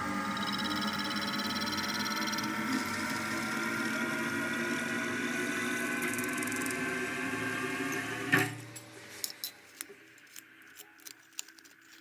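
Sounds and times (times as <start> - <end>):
machine tool humming: 0.0 - 8.4.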